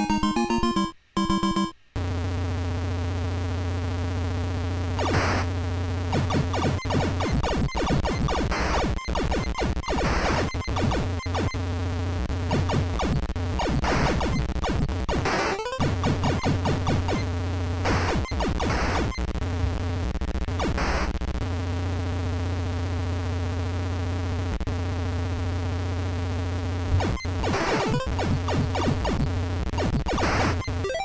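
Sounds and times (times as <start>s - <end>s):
electronic music with synthesizer chords: 0.0s - 1.8s, 27.1s - 31.0s.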